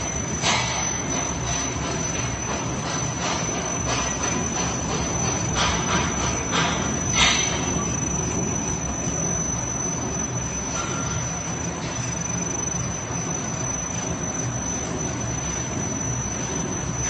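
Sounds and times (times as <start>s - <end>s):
faint machine squeals: 0.0s - 17.0s
machine running with whine: 0.0s - 17.0s.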